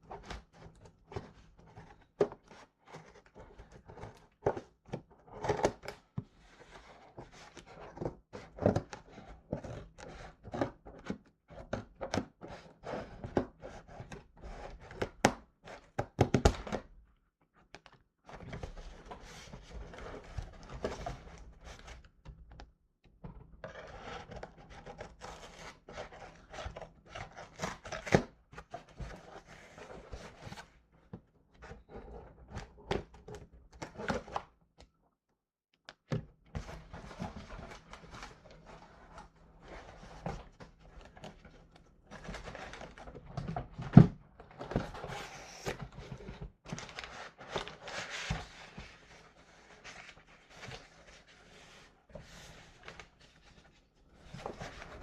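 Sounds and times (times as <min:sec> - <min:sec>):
cardboard rustling: 0:42.2 - 0:55.0.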